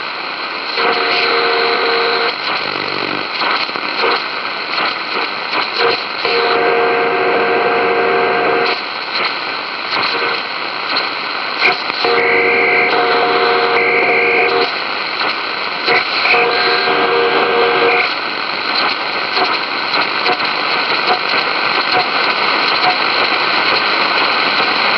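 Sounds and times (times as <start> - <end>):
radio static: 0.0 - 24.9
chord of steady tones: 6.3 - 8.7, 12.0 - 14.7, 16.3 - 18.0.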